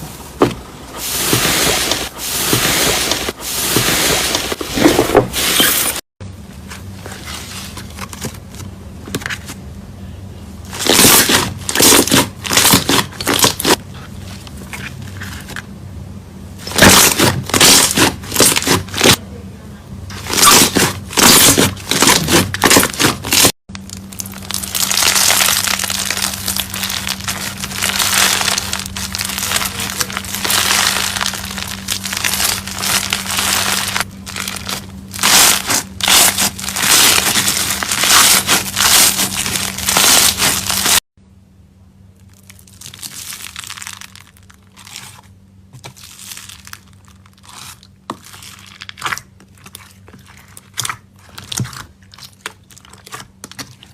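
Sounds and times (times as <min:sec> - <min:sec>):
slime crackling and crunching: 0:10.7 - 0:15.6, 0:16.6 - 0:19.2, 0:20.1 - 0:41.0, 0:42.2 - 0:53.9.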